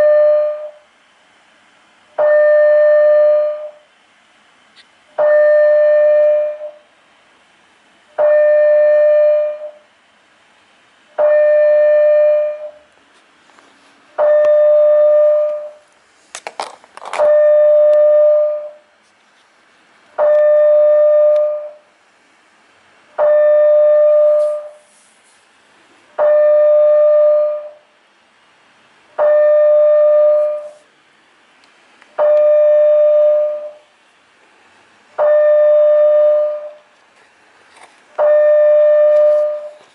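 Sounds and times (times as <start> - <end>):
fire alarm pulsing tone: 0.0 - 0.9, 2.2 - 3.9, 5.2 - 6.9, 8.2 - 9.9, 11.2 - 12.9, 14.2 - 15.8, 17.2 - 18.9, 20.2 - 21.9, 23.2 - 24.8, 26.2 - 27.9, 29.2 - 30.8, 32.2 - 33.9, 35.2 - 36.8, 38.2 - 39.8.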